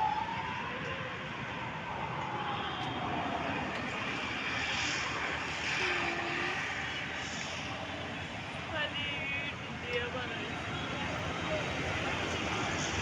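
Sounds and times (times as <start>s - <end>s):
siren wailing: 0.0s - 3.7s
road traffic: 0.0s - 13.0s.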